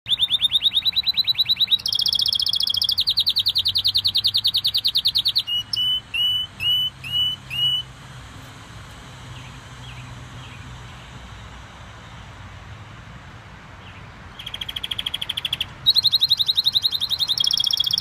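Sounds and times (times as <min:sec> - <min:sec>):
canary singing trills: 0:00.0 - 0:07.9, 0:13.9 - 0:18.0.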